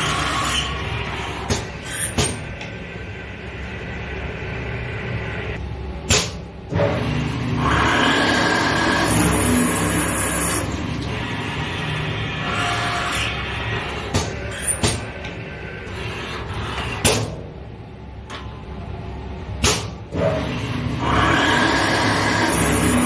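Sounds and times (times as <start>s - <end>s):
drilling machine running: 6.7s - 17.0s, 20.1s - 23.0s.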